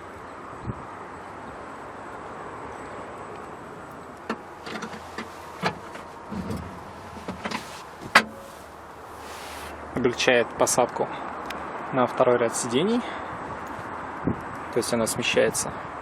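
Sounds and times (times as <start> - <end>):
steady background hiss: 3.0 - 10.8.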